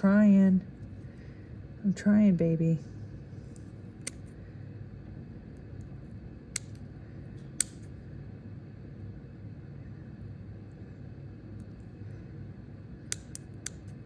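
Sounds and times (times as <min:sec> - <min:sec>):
low room hum: 0:00.0 - 0:14.0
sharp clicks: 0:06.5 - 0:06.9, 0:07.5 - 0:07.9, 0:13.1 - 0:14.0.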